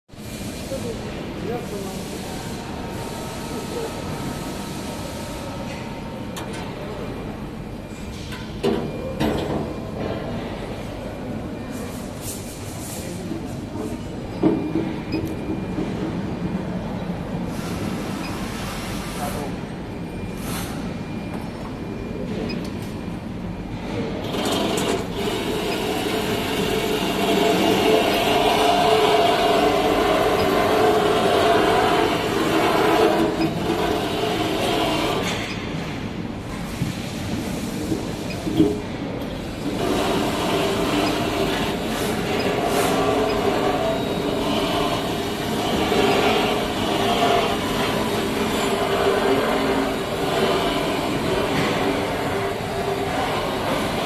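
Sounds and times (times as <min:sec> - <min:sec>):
cutting saw running: 0:25.2 - 0:35.2, 0:39.8 - 0:54.0.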